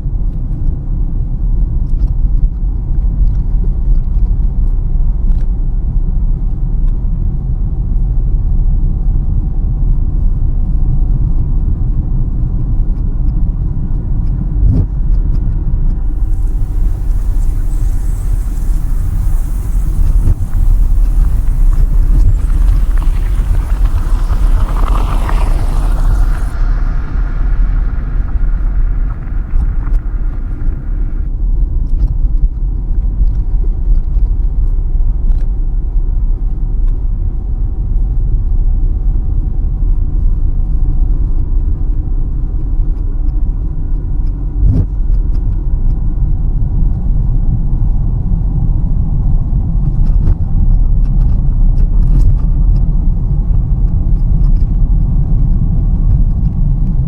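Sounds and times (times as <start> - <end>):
car cabin road rumble: 16.0 - 31.3.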